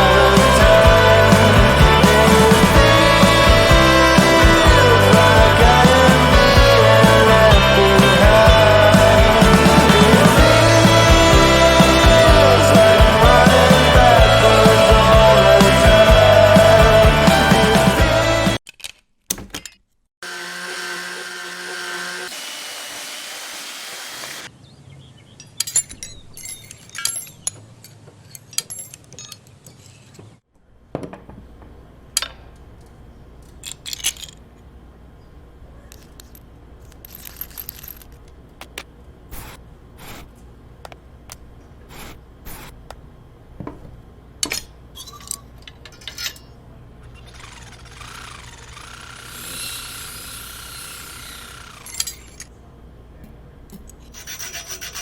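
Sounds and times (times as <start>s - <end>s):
metal tools clinking: 25.3s - 30.3s, 33.4s - 34.6s, 35.8s - 38.4s, 44.4s - 52.6s.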